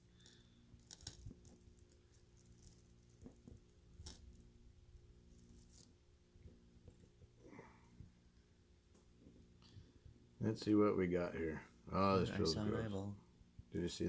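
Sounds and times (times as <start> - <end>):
faint sharp clicks and taps: 0.2 - 4.5, 5.8 - 9.9
steady low hum: 3.8 - 14.0.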